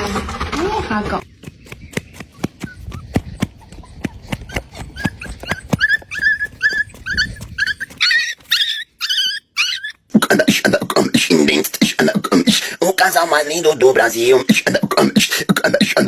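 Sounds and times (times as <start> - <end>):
dog whimpering and yipping: 2.3 - 10.1.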